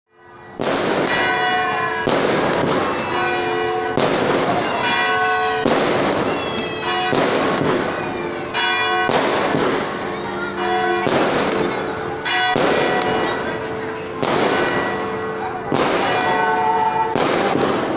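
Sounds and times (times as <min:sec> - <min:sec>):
church bells ringing: 0:00.1 - 0:17.9
fireworks banging: 0:00.2 - 0:17.9.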